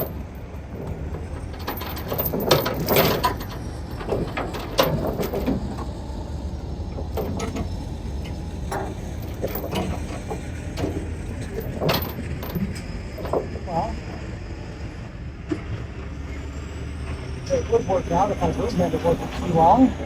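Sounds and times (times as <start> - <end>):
clicks and knocks against metal: 0.0 - 6.0, 6.9 - 13.7.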